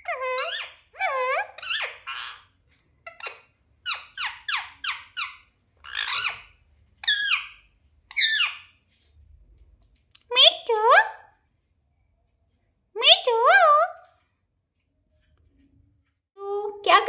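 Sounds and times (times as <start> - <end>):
parakeet shrill chirping calls: 0.0 - 8.7.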